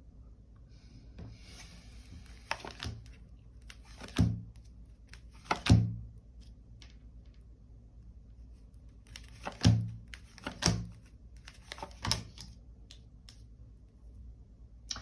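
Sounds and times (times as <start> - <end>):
cards rustling: 1.6 - 5.8, 8.9 - 13.4
cards thudding on table: 5.4 - 6.0, 9.3 - 11.0.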